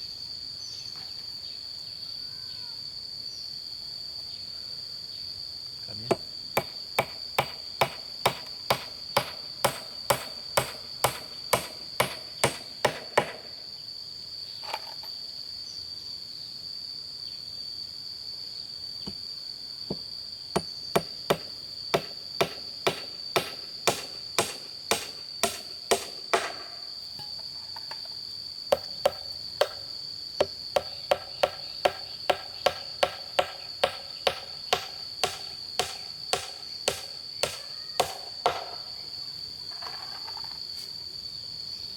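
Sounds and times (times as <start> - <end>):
high-pitched insect drone: 0.0 - 41.9
hammering on bamboo: 6.1 - 13.5, 19.9 - 26.8, 28.7 - 38.9.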